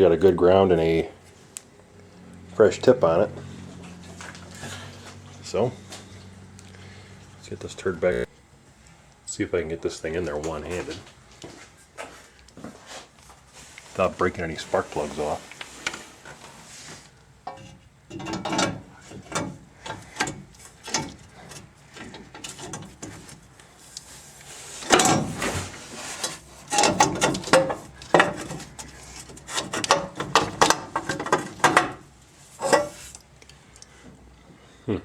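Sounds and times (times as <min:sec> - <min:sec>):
metal knocking and scraping on metal: 0:17.4 - 0:23.5, 0:24.7 - 0:33.2.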